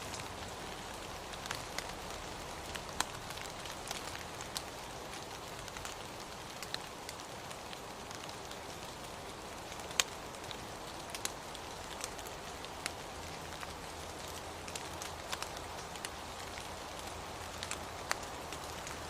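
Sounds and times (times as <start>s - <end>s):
steady rain falling: 0.0s - 19.0s.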